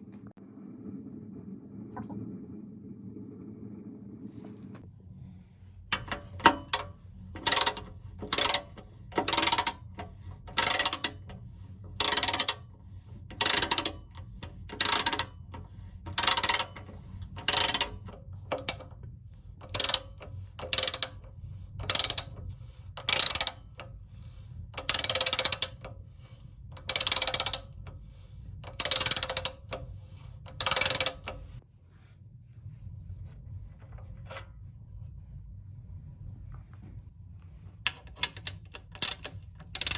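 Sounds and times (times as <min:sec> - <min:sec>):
low steady hum: 0:00.0 - 0:39.9
ratchet wrench clicking: 0:06.0 - 0:11.4, 0:12.0 - 0:12.7, 0:13.3 - 0:18.8, 0:19.6 - 0:21.2, 0:21.8 - 0:22.4, 0:23.0 - 0:23.9, 0:24.8 - 0:25.9, 0:26.8 - 0:27.8, 0:28.6 - 0:29.8, 0:30.5 - 0:31.6, 0:37.9 - 0:39.9.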